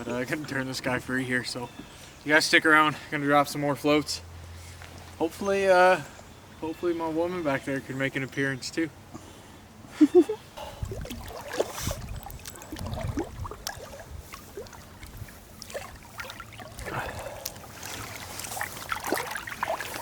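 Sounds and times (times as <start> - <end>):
creek water running: 10.6 - 20.0
water gurgling: 10.6 - 20.0.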